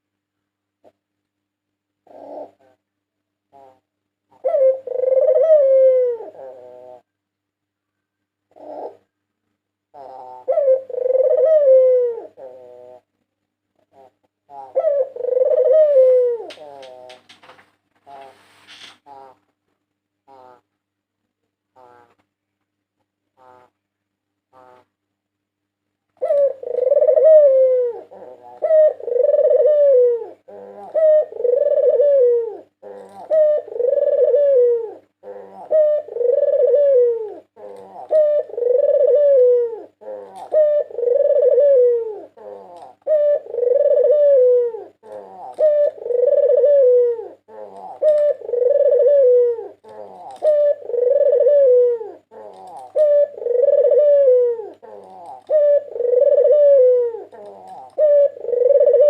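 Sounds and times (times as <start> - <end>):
dove cooing: 2.0 - 2.9, 3.5 - 7.1, 8.5 - 9.2, 9.9 - 13.2, 13.8 - 19.5, 20.2 - 20.7, 21.8 - 22.2, 26.2 - 59.0.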